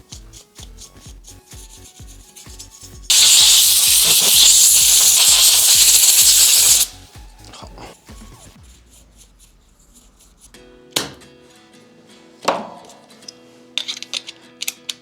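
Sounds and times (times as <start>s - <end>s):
music with steady beat: 0.0s - 3.1s, 6.9s - 9.6s
compressed air hissing: 3.1s - 7.0s.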